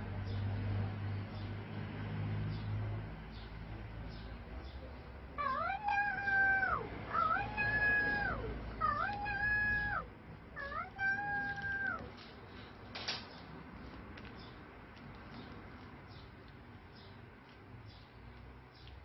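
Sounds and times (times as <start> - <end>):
cat meowing: 5.4 - 12.2.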